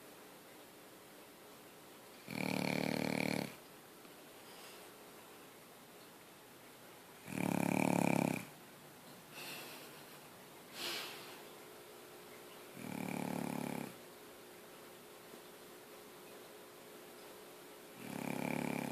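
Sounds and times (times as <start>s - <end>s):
soft breaths: 2.1s - 5.6s, 9.2s - 11.7s
loud snores: 2.2s - 3.6s, 7.2s - 8.6s, 12.8s - 14.0s, 18.0s - 18.9s.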